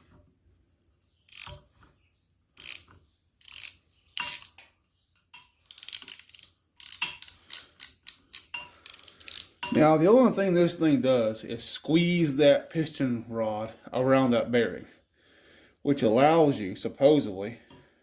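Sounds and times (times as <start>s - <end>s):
ratchet clicking: 1.3s - 1.6s, 2.6s - 4.6s, 5.6s - 9.7s.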